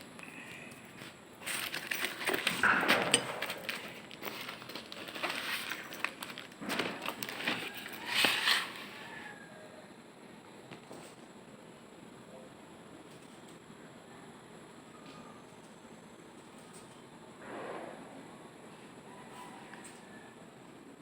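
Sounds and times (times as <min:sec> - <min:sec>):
packaging crinkling and crackling: 0:00.6 - 0:09.3.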